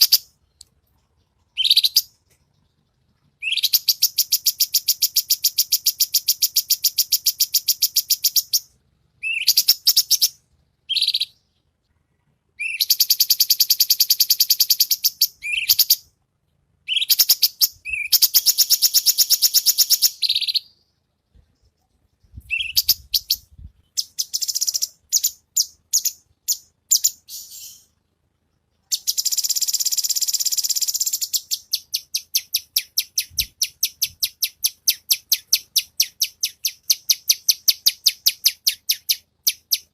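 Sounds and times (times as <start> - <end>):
bird singing rapid trills: 0.0 - 0.4, 1.2 - 11.6, 12.6 - 16.1, 22.1 - 28.0, 28.8 - 39.9.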